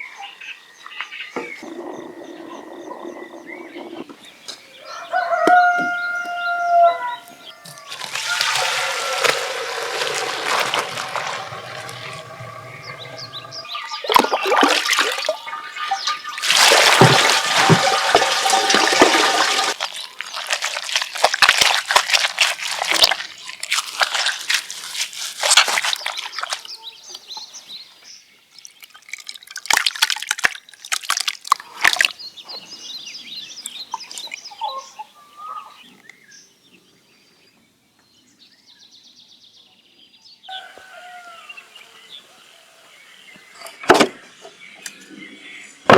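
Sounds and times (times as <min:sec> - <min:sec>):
water dripping: 0:07.7 - 0:27.4, 0:28.5 - 0:32.2
water splashing and sloshing: 0:07.7 - 0:27.6, 0:28.5 - 0:32.3.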